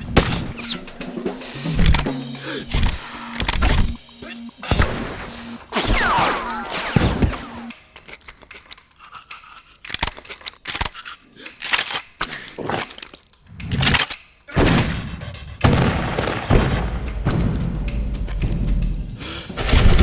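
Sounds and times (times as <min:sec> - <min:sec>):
sharp cracks and bangs: 0:00.0 - 0:08.0, 0:13.6 - 0:20.0.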